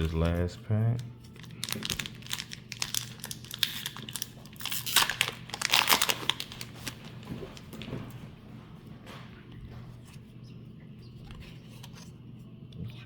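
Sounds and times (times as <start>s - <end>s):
foil wrapper crinkling: 0.0s - 7.8s.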